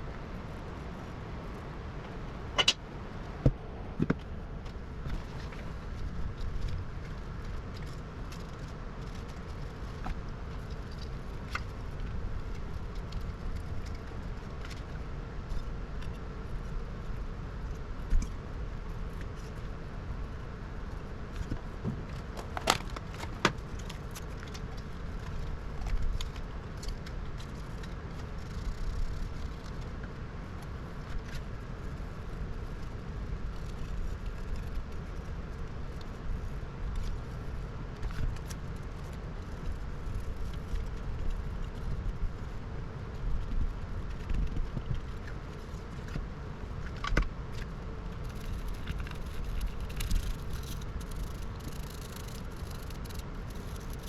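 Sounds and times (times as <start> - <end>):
steady low rumble: 0.0 - 54.0
small tools clicking and tapping: 48.3 - 54.0.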